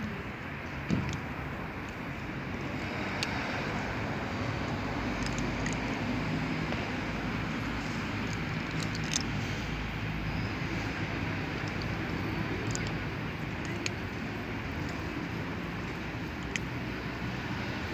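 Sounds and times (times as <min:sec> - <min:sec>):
motor vehicle engine humming: 0:00.0 - 0:17.9
faint clicks: 0:11.5 - 0:16.8.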